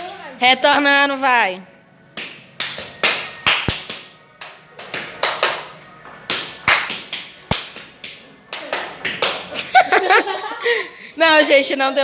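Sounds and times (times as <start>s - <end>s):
hand claps and slaps: 2.1s - 9.7s.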